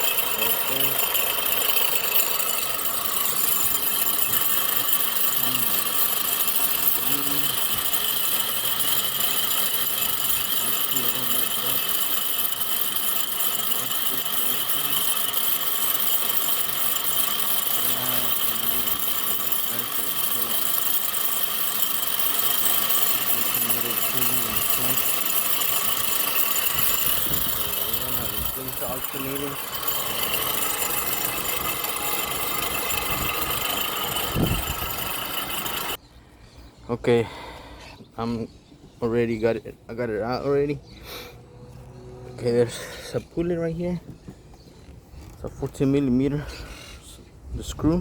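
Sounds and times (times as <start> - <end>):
alternator whining and grinding: 0.0 - 36.0, 38.8 - 46.3
car engine running: 0.0 - 36.0.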